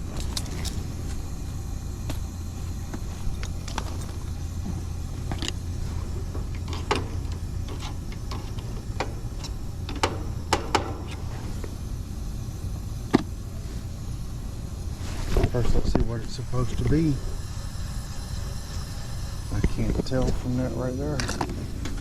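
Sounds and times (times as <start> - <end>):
air conditioner humming: 0.0 - 22.0
sharp clicks and knocks: 6.3 - 11.2.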